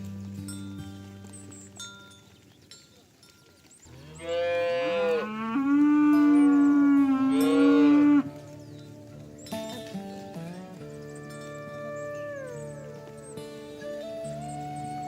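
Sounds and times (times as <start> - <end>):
cow mooing: 3.9 - 8.4.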